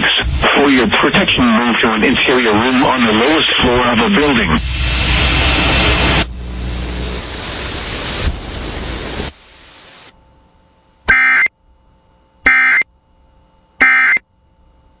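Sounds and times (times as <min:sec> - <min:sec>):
radio static hiss: 0:00.0 - 0:10.1, 0:12.5 - 0:12.8, 0:13.8 - 0:14.2
shrill warbling data bursts: 0:11.1 - 0:11.5, 0:12.5 - 0:12.8, 0:13.8 - 0:14.2.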